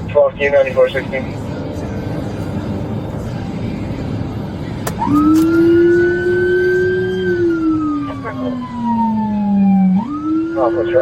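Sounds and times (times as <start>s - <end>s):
vehicle road noise: 0.0s - 11.0s
police siren wailing: 4.9s - 11.0s.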